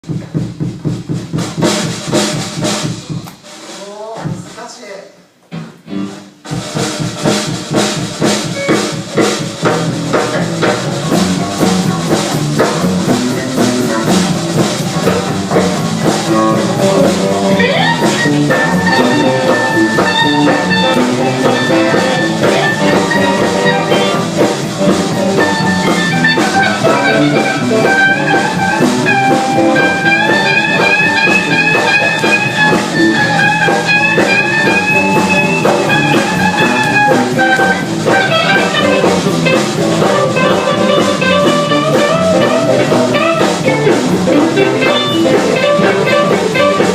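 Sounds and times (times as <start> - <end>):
drum kit beat: 0.0 - 46.9
electric guitar: 5.5 - 46.9.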